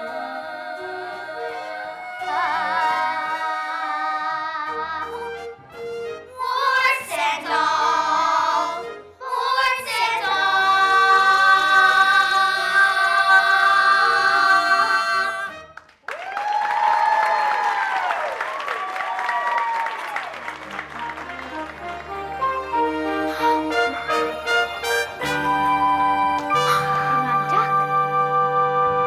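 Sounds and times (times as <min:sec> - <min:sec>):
instrumental backing track: 0:20.4 - 0:29.0.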